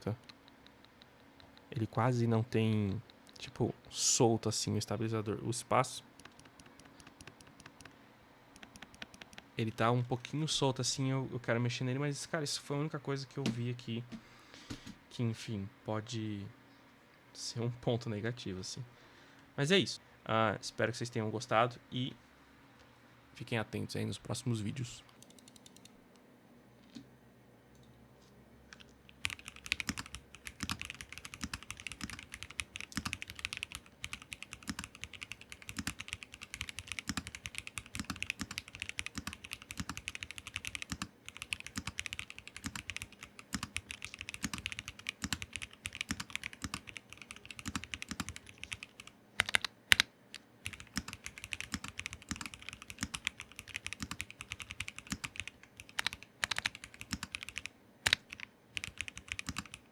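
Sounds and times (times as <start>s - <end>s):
mechanical keyboard typing: 6.2s - 7.9s, 8.6s - 9.5s, 29.1s - 59.9s.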